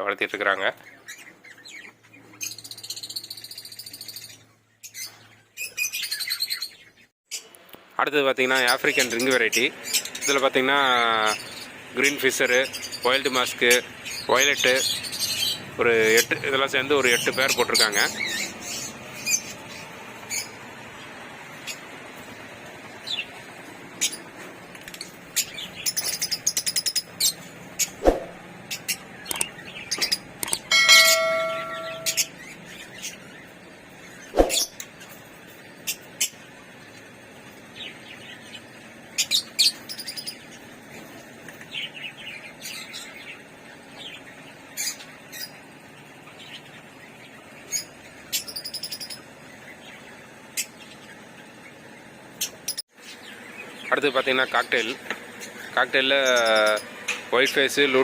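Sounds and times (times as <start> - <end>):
birds chirping: 0.0 - 58.0.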